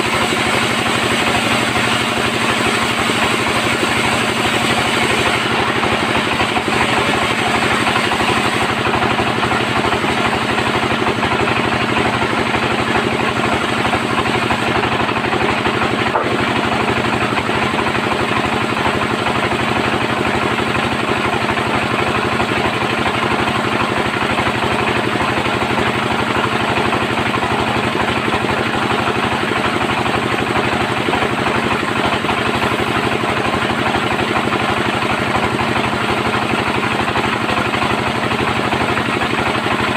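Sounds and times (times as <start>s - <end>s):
bandsaw droning: 0.0s - 19.0s.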